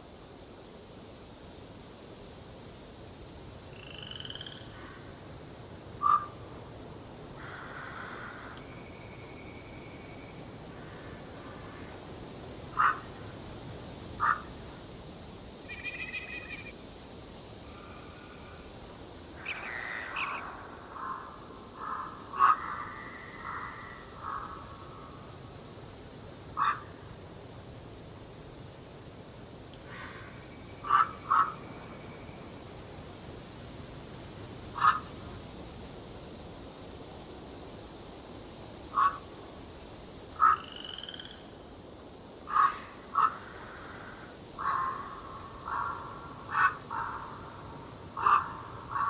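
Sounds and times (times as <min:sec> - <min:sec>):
buzzy bird call: 0:15.6 - 0:16.7, 0:19.4 - 0:24.6
bird trill: 0:15.7 - 0:16.7
loud abrupt bird call: 0:15.7 - 0:16.7, 0:19.4 - 0:24.5.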